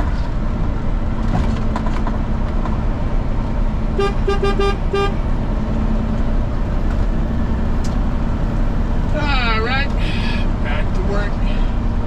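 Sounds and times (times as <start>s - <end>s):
truck engine and road rumble: 0.0s - 12.0s
vehicle horn tooting: 4.0s - 5.2s.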